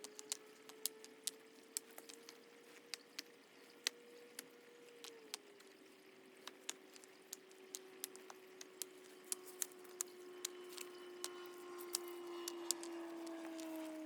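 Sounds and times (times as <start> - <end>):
cooking crackles and pops: 0.0 - 14.0
faint whistling tone: 6.8 - 14.0.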